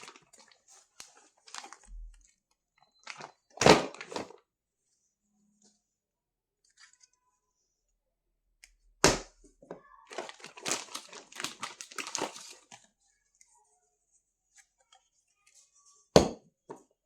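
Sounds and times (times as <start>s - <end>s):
packaging crinkling and tearing: 0.0s - 1.9s, 10.1s - 12.8s
packaging cracking: 10.1s - 12.7s.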